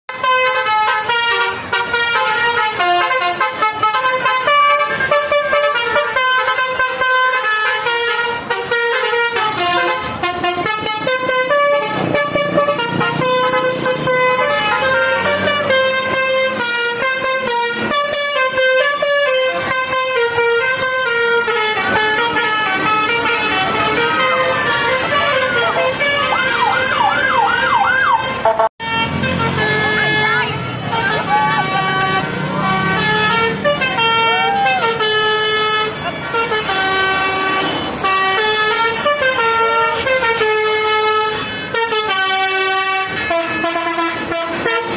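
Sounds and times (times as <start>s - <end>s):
musical bus horn melody: 0.0s - 44.9s
siren-like horn wails: 0.1s - 44.9s.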